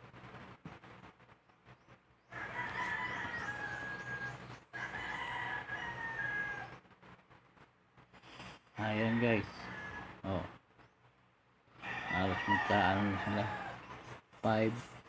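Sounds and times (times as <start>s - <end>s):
rooster crowing: 2.2s - 6.8s, 8.8s - 10.4s, 11.7s - 13.9s.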